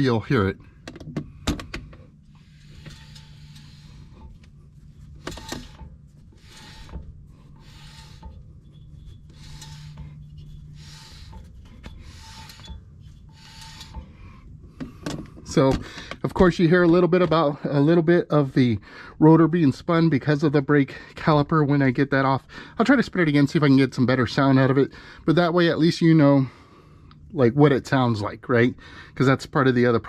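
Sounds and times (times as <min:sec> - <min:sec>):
brake pads scraping spinning rotor: 0:02.0 - 0:17.5.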